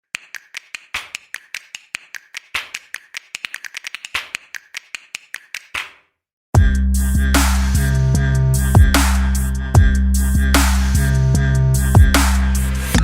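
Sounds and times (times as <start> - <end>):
rapid sharp clicks: 0.0 - 6.0
electronic music with heavy bass: 6.6 - 13.0.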